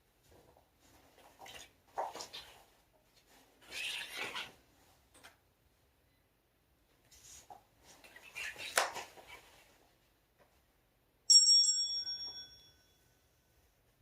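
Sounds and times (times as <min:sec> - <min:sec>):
small bell ringing: 0:11.3 - 0:13.4.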